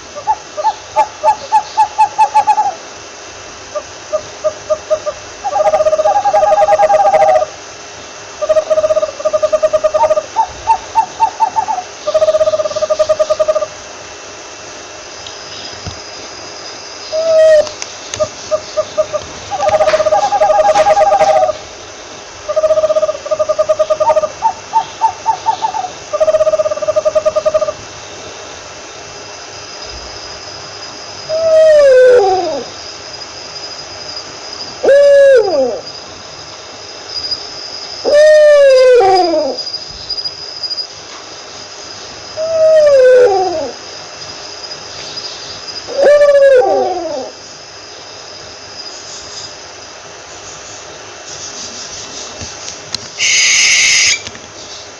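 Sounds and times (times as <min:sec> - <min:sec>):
owl hooting: 0:00.0 - 0:02.9, 0:03.7 - 0:07.6, 0:08.3 - 0:13.9, 0:17.0 - 0:21.7, 0:22.4 - 0:28.0, 0:31.2 - 0:32.9, 0:34.7 - 0:36.3, 0:37.1 - 0:40.8, 0:42.3 - 0:44.0, 0:45.4 - 0:47.4, 0:53.2 - 0:54.3.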